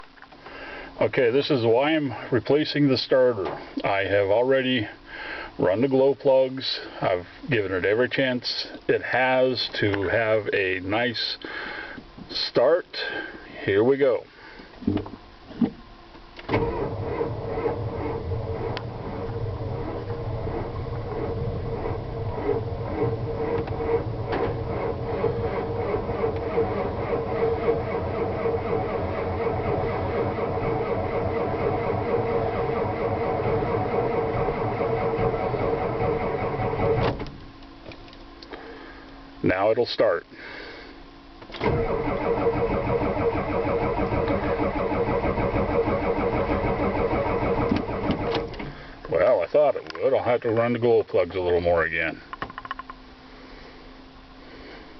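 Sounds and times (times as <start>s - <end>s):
diesel engine cranking slowly: 16.4s - 37.4s, 41.5s - 49.2s.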